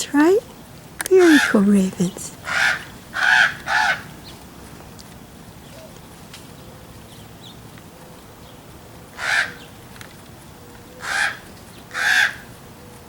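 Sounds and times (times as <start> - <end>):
ravens cawing: 2.4 - 4.2, 9.2 - 9.6, 11.0 - 12.5.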